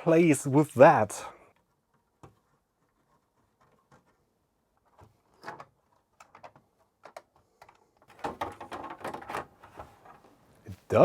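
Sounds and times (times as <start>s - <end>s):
plastic keyboard clicks and knocks: 4.8s - 9.9s.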